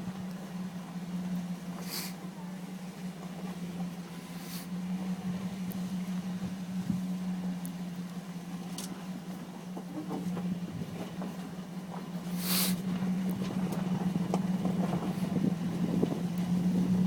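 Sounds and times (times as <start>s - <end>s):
truck engine droning: 0.0s - 17.0s
brief hiss: 1.8s - 2.2s, 4.4s - 4.7s, 12.3s - 12.8s.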